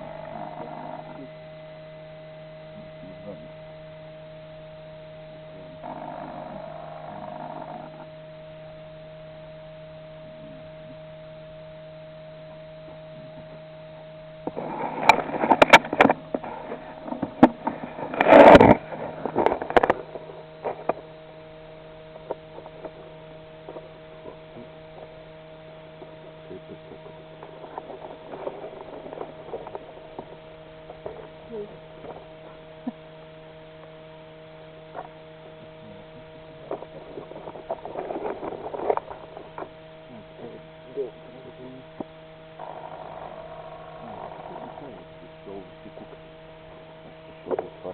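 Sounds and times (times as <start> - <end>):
steady electrical hum: 0.0 - 47.9
loud crackles and knocks: 14.4 - 21.1, 36.7 - 39.8.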